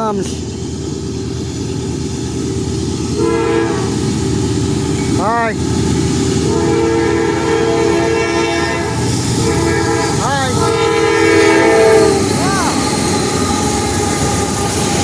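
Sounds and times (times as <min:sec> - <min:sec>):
train wheels rumbling on rail: 0:00.0 - 0:15.0
locomotive air horn: 0:03.2 - 0:04.0, 0:06.5 - 0:15.0.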